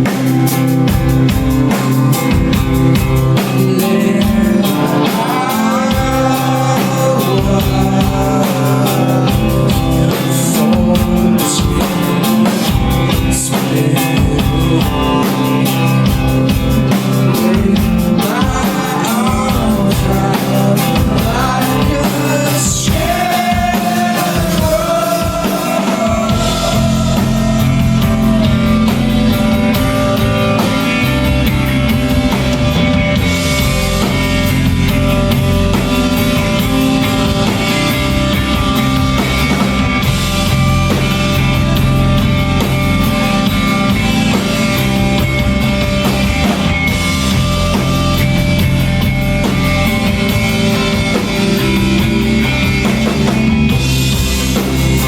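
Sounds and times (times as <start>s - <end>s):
rock band playing live: 0.0s - 55.0s
person singing: 3.2s - 30.7s.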